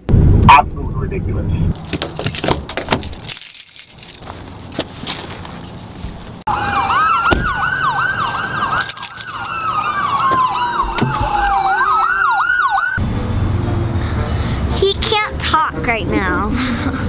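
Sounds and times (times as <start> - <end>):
emergency vehicle siren: 6.5 - 13.0.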